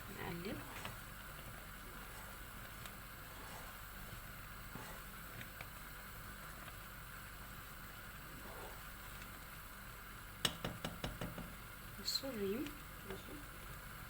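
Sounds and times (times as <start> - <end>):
jam cooking with faint hiss: 0.0 - 14.0
soft ticks and pops: 5.3 - 5.8.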